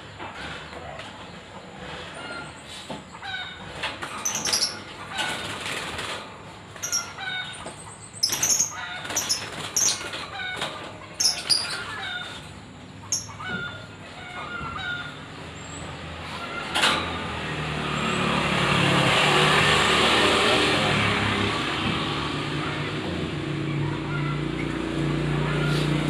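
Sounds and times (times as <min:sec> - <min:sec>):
wing flutters: 0:03.8 - 0:07.1, 0:08.2 - 0:12.6
small birds chirping: 0:04.1 - 0:05.0, 0:06.7 - 0:13.8.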